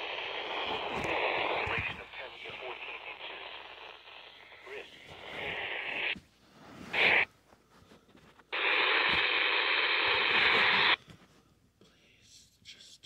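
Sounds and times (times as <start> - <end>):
radio static hiss: 0.0 - 6.2, 6.8 - 7.4, 8.4 - 11.0.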